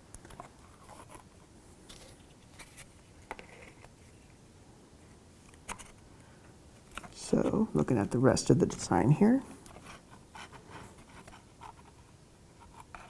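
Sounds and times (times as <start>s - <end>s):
light clicks and scrapes of kit pieces: 0.1s - 4.4s.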